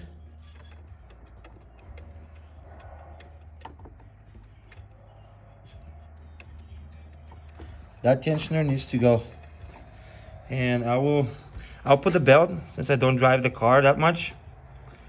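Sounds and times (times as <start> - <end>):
pulley clicking and ticking: 0.0 - 11.0.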